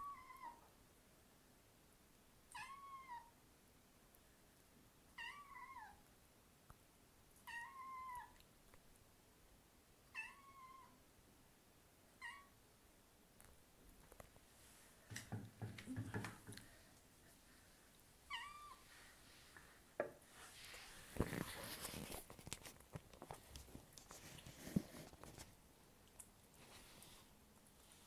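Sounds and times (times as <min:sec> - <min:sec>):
cat meowing: 0:02.5 - 0:03.3, 0:05.2 - 0:06.0, 0:07.4 - 0:08.4, 0:10.1 - 0:11.0, 0:18.3 - 0:18.8.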